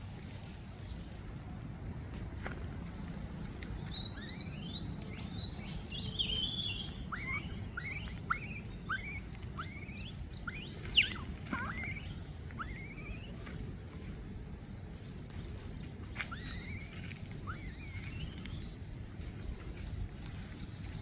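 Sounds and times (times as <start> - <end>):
high-pitched animal chirping: 3.9 - 13.4, 16.3 - 18.8.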